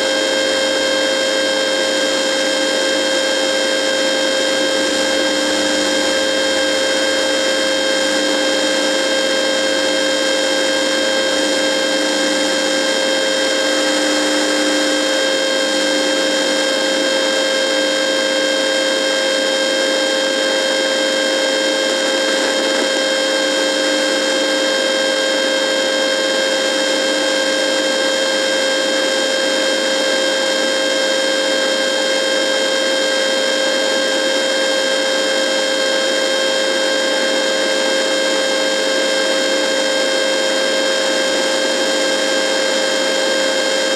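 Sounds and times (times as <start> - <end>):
high-pitched whine: 0.0 - 43.9
radio static hiss: 21.7 - 23.3.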